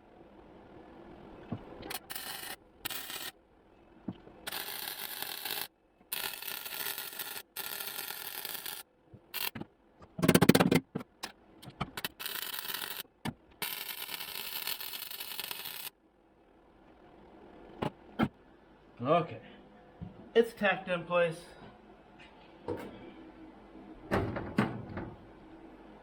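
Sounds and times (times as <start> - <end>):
welder crackling and hissing: 1.8 - 3.4, 4.4 - 9.6, 11.9 - 16.0.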